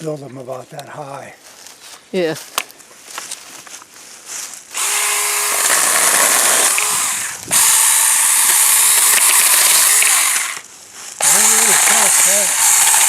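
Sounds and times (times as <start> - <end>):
electric chainsaw running: 4.7 - 10.6, 11.2 - 13.0.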